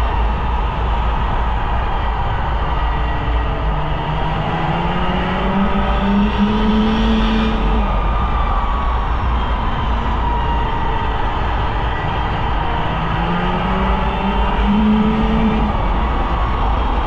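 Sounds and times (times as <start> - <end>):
snowmobile engine running: 3.5 - 17.0.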